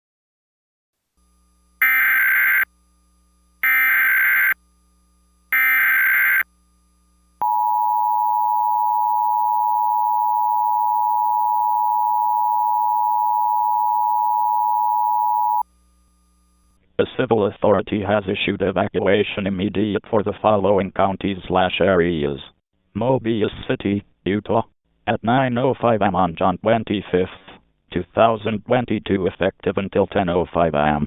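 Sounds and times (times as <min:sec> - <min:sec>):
digital data tone bursts: 0:01.8 - 0:02.7, 0:03.6 - 0:04.6, 0:05.6 - 0:06.4, 0:07.4 - 0:15.6
two-tone attention signal: 0:01.8 - 0:02.7, 0:03.6 - 0:04.6, 0:05.6 - 0:06.4, 0:07.4 - 0:15.6.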